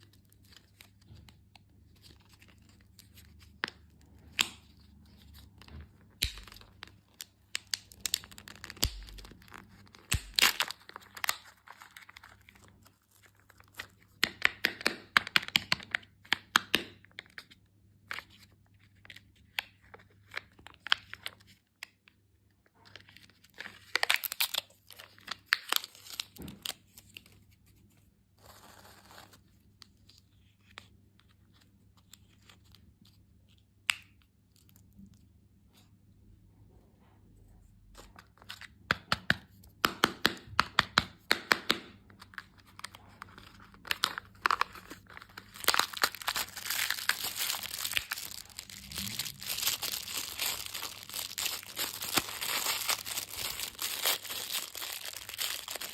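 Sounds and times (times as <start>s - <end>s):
candy wrappers crinkling: 0.0s - 16.0s, 22.8s - 27.5s, 42.1s - 55.9s.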